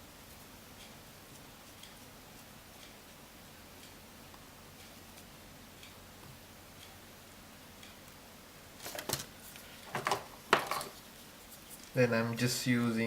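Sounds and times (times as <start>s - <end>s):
faint even ticking: 0.0s - 8.3s.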